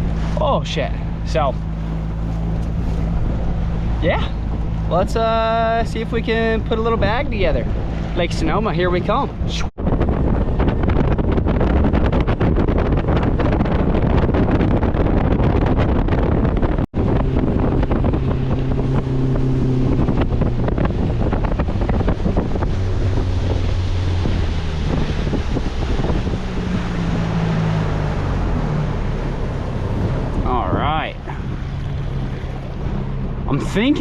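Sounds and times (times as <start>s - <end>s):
outboard motor running: 0.0s - 34.0s
wind buffeting microphone: 0.0s - 34.0s.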